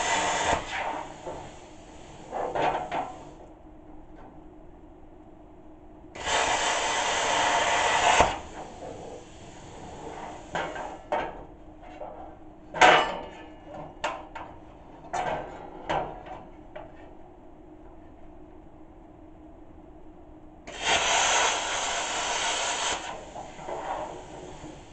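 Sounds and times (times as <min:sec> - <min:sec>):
loud hiss: 0:00.0 - 0:03.4, 0:06.2 - 0:11.0, 0:20.7 - 0:24.9.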